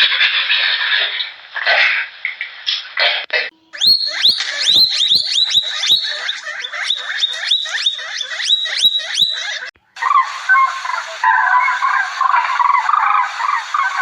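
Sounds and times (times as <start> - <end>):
noisier animal sound: 3.7 - 14.0
animal high chirping calls: 3.8 - 14.0.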